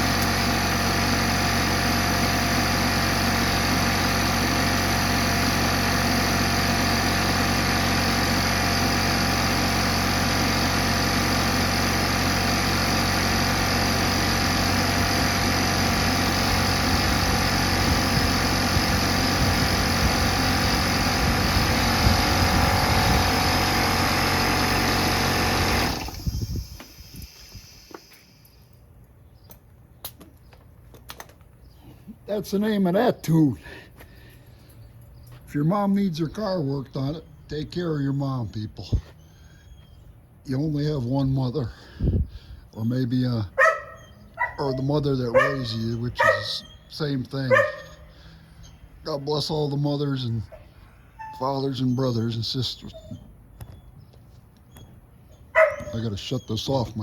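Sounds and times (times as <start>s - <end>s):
engine running with steady hum: 0.0s - 32.3s, 43.5s - 49.0s, 52.9s - 56.2s.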